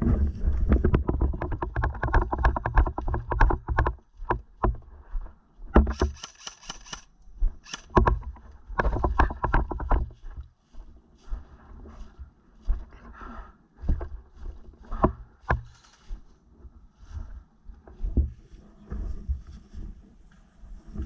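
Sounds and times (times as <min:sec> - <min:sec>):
airsoft gun firing: 0:05.8 - 0:07.1.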